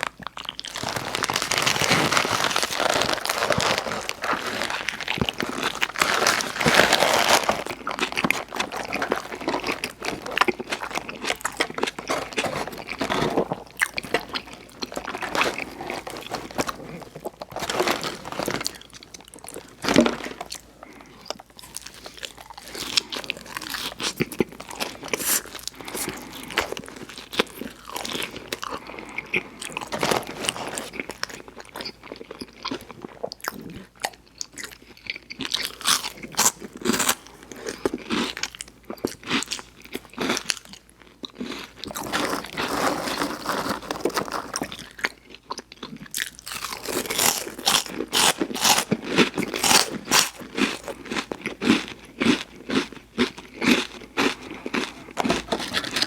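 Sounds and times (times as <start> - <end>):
chewing burger and fries: 0.0 - 56.0
loud crunch: 0.6 - 20.6, 41.4 - 45.1, 46.2 - 51.2.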